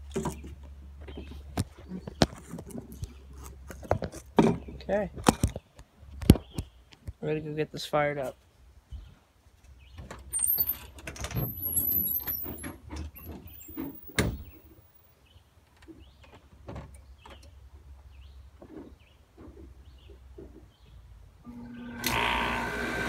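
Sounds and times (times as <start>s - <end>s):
door opening and shutting: 10.0s - 14.8s.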